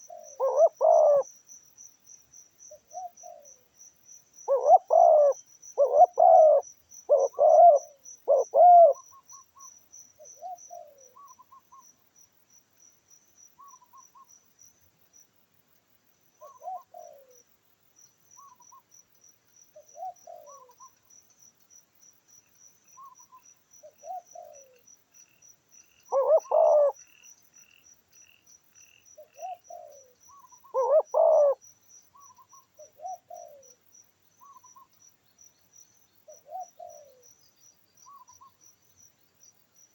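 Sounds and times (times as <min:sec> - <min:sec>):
dove cooing: 0:00.0 - 0:01.3, 0:04.5 - 0:09.0, 0:16.4 - 0:17.4, 0:20.0 - 0:20.8, 0:23.9 - 0:24.8, 0:26.1 - 0:27.0, 0:29.4 - 0:31.6, 0:32.2 - 0:33.8, 0:36.3 - 0:37.2
crickets trilling: 0:00.0 - 0:39.9.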